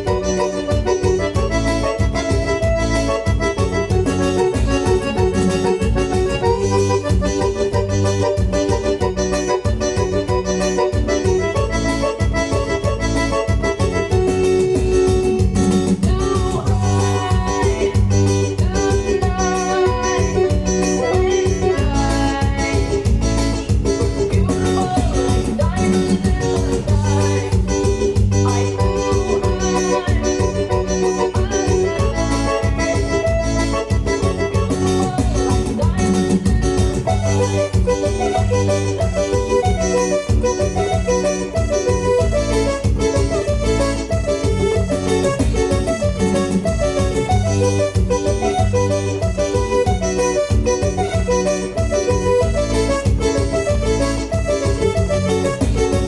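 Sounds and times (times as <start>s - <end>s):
dance music with heavy bass: 13.9s - 39.4s.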